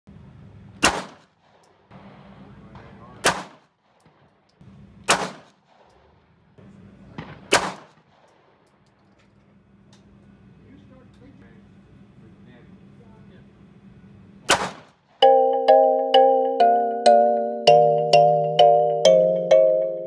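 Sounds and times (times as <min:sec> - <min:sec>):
gunshots: 0:00.8 - 0:04.3, 0:05.1 - 0:06.1, 0:07.2 - 0:08.6, 0:14.5 - 0:15.0.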